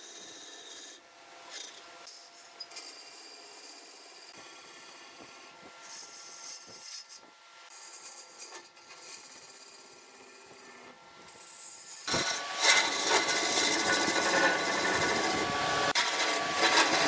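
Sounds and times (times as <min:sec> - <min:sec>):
tool scraping spinning wood: 0:00.0 - 0:17.0
wood lathe humming: 0:11.8 - 0:17.0.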